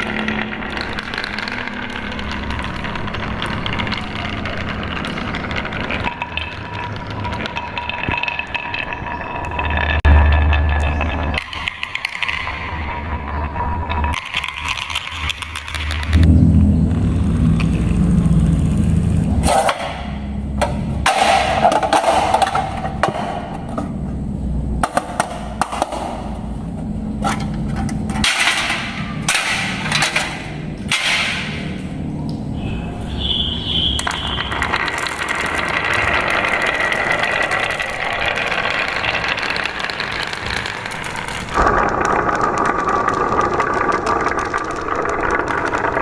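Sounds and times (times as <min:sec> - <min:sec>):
marbles clacking on wooden track: 0:00.0 - 0:16.2, 0:19.4 - 0:24.1, 0:24.7 - 0:32.0, 0:33.5 - 0:46.0
low rumble of rolling marbles: 0:00.0 - 0:46.0
steady ringing hum: 0:16.1 - 0:24.8.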